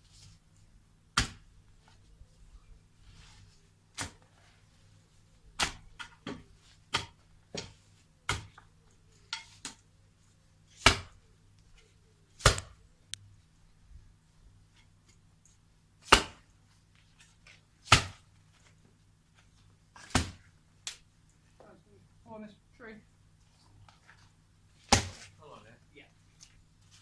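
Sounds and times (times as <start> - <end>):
chopping strikes on hedge wood: 1.2 - 1.4, 5.6 - 8.6, 10.8 - 11.2, 12.4 - 12.8, 16.0 - 16.4, 17.9 - 18.2, 20.0 - 21.0, 24.9 - 25.3.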